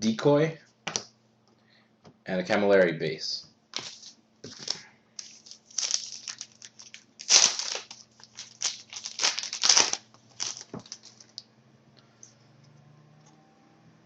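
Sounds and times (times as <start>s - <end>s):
card pack wrapper crinkling and tearing: 3.8s - 11.4s.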